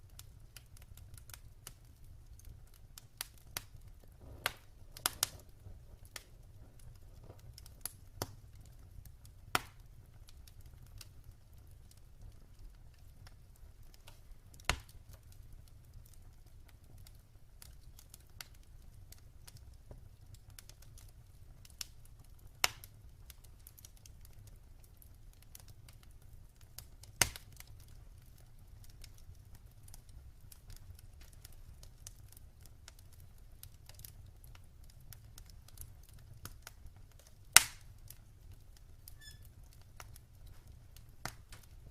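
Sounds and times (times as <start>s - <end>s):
burning logs crackling: 0.0s - 41.9s
fire flames rumbling: 0.0s - 41.9s.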